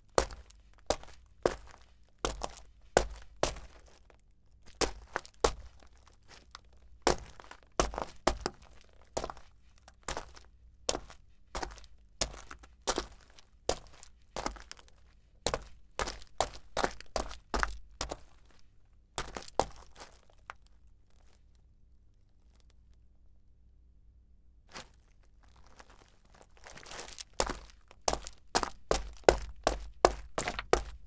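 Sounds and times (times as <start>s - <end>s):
footsteps on stone: 0.2s - 4.0s, 4.8s - 5.8s, 7.1s - 9.4s, 10.1s - 14.8s, 15.5s - 18.3s, 19.2s - 20.0s, 26.6s - 31.0s.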